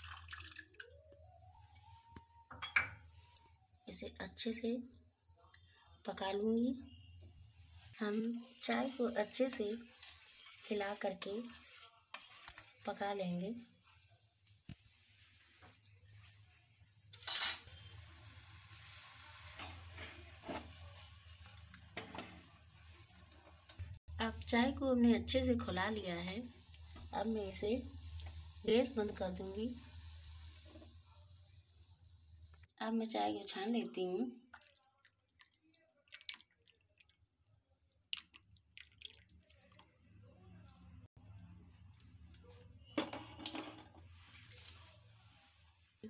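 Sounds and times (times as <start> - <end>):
milk tea boiling in a pan: 0.0 - 1.6, 7.5 - 16.0, 17.8 - 24.0, 24.6 - 32.7, 33.4 - 41.2
tea dripping through strainer: 0.0 - 2.0, 34.4 - 41.4
spoon scraping a pan: 7.6 - 15.7, 17.2 - 22.6.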